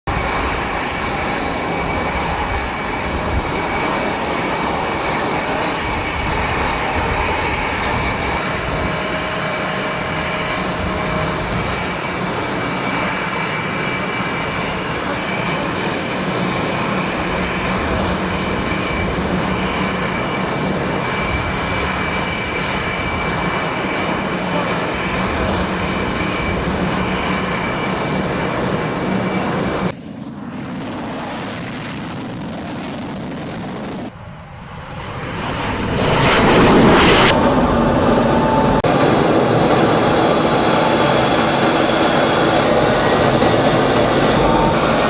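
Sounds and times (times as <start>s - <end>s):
jet engine running: 0.0s - 45.0s.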